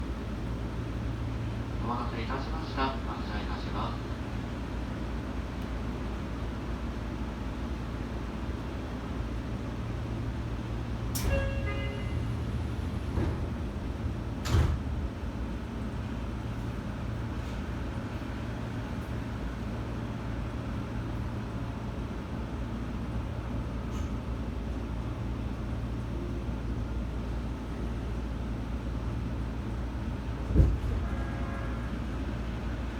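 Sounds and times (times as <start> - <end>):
train low hum: 0.0 - 32.9
train door chime: 11.1 - 12.5
sliding doors thudding shut: 13.0 - 15.2, 30.4 - 31.1.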